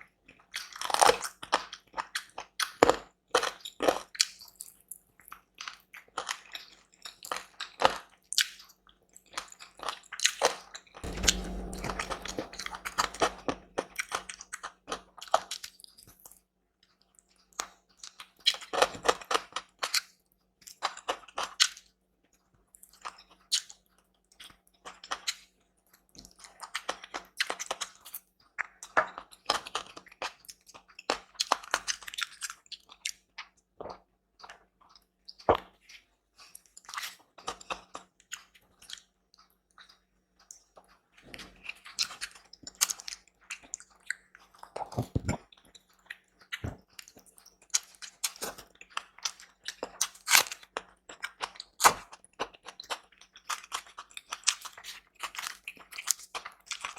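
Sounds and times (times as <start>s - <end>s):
chewing and crunching food: 41.7s - 56.9s.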